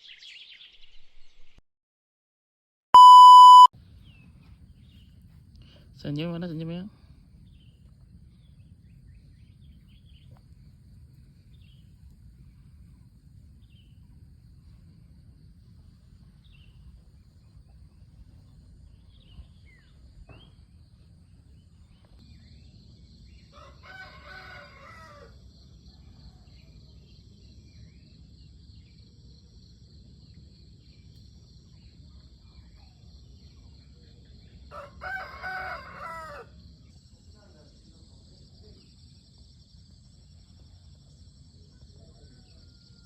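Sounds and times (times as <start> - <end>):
faint bird chirps: 3.0 - 5.0
rooster crowing: 23.5 - 25.4, 34.7 - 36.6.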